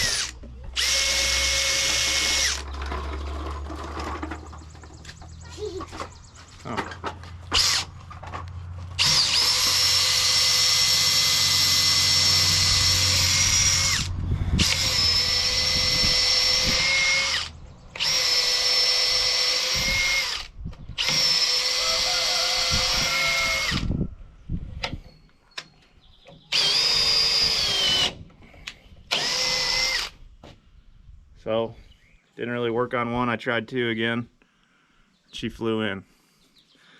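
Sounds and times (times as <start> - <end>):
cordless drill motor whining: 0.0 - 3.5, 7.5 - 7.9, 8.9 - 24.0, 26.5 - 30.2.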